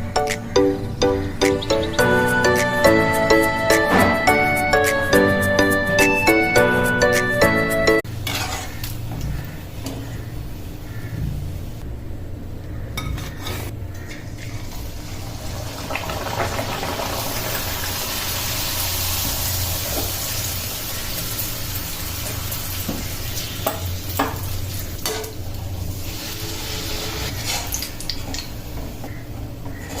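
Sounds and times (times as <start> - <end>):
deep-frying sizzle: 14.4 - 28.7.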